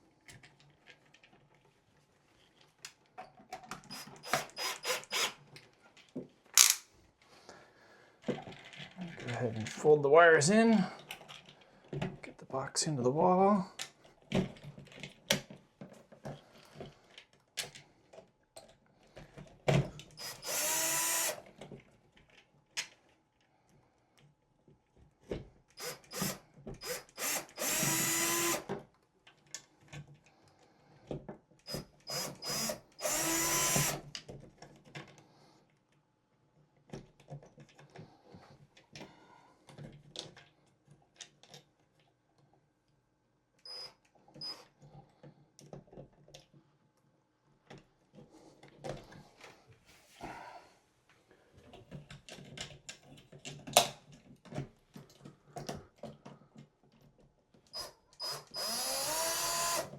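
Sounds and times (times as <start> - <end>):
cordless drill driving screws: 3.7 - 5.5, 6.6 - 6.8, 20.0 - 21.5, 25.8 - 28.8, 31.7 - 34.1, 43.7 - 44.7, 57.8 - 59.9.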